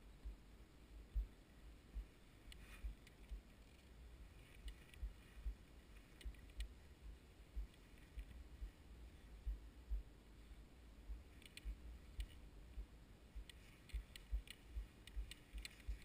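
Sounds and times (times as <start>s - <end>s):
faint low thumps: 0.0s - 10.3s, 10.9s - 16.0s
light clicks: 2.0s - 8.9s, 11.2s - 16.0s.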